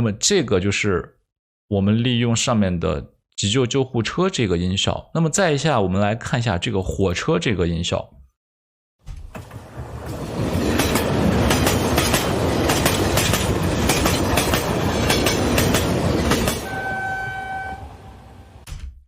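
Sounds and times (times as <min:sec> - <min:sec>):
wheels clacking over rail joints: 0:09.3 - 0:17.0
train rumbling past: 0:09.4 - 0:18.7
train horn: 0:16.6 - 0:18.6.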